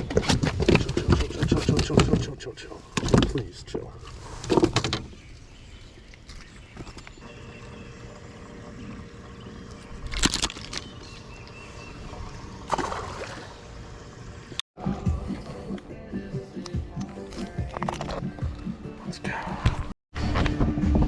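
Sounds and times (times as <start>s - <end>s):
water sloshing around boat: 0.0s - 14.6s
short splashes: 12.7s - 13.7s.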